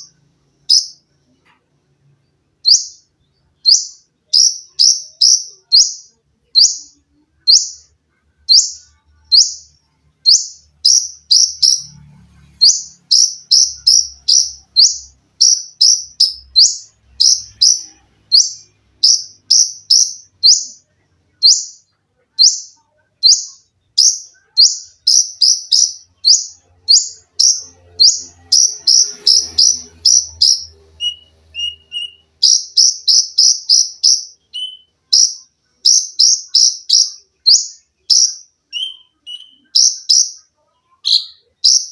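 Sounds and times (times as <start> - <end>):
sunbird calling shrill notes: 0.0 - 1.0, 8.5 - 12.0, 12.6 - 20.8, 21.4 - 40.4.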